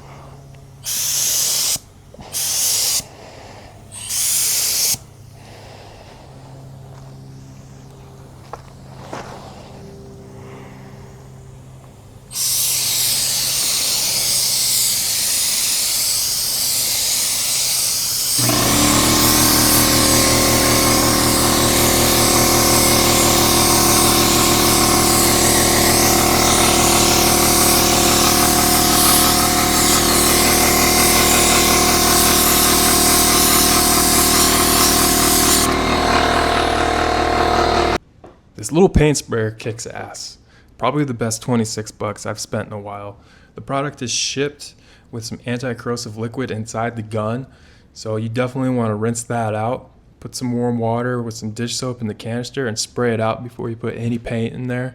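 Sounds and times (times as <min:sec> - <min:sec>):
air compressor humming: 0:00.0 - 0:38.0
spray gun hissing: 0:00.8 - 0:38.0.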